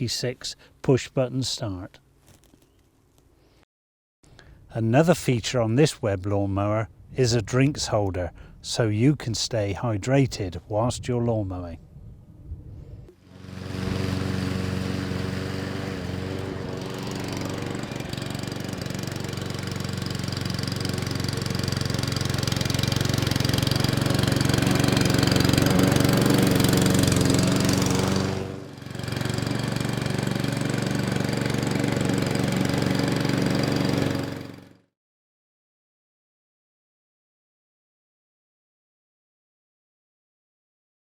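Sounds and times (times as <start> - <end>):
lawnmower engine running: 13.1 - 34.9.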